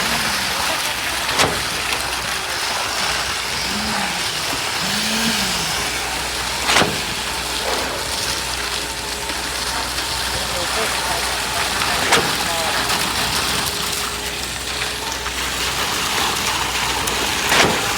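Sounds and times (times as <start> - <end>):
machinery engine running: 0.0 - 17.9
sharp knocks: 3.6 - 8.8.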